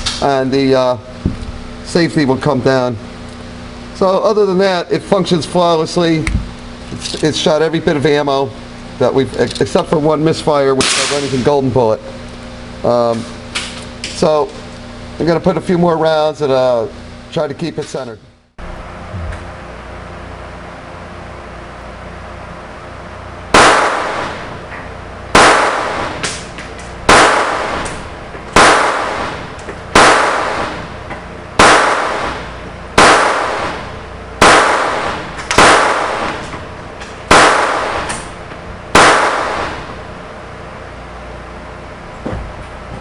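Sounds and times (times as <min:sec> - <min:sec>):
pistol shots echoing: 0:23.5 - 0:24.6, 0:25.4 - 0:26.5, 0:27.1 - 0:31.0, 0:31.6 - 0:36.6, 0:37.2 - 0:40.0.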